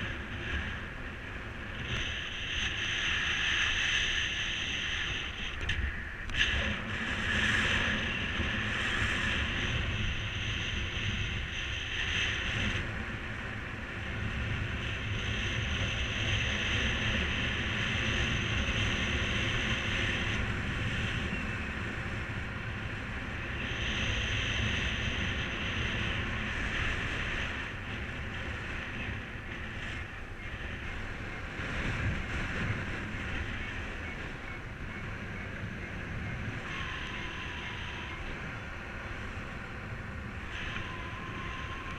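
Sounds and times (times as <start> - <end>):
wind rushing over microphone: 0.0 - 41.9.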